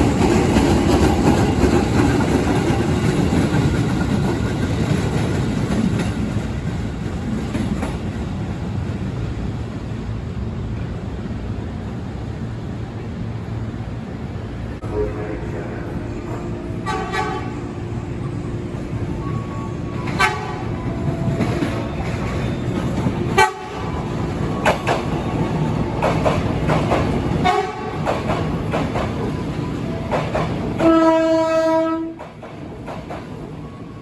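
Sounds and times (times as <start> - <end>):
wheels clacking over rail joints: 0.0 - 8.6, 18.6 - 33.5
train rumbling: 0.0 - 34.0
train horn: 16.8 - 17.9, 20.0 - 21.8, 23.3 - 24.0, 27.4 - 28.1, 30.8 - 32.2.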